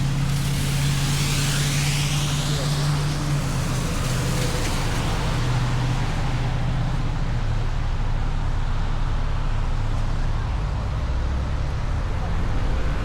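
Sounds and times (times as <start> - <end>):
high hiss: 0.0 - 6.6
car driving with road noise: 0.0 - 13.0.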